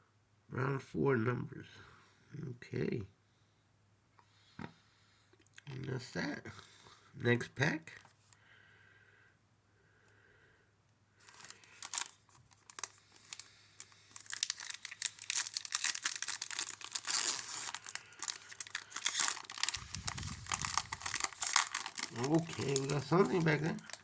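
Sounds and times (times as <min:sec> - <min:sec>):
wrapper tearing and crinkling: 0:11.2 - 0:24.0.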